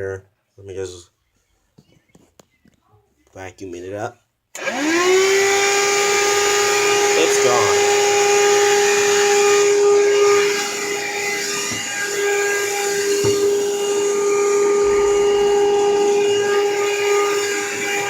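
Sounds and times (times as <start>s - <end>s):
vacuum cleaner whining: 4.6s - 18.0s.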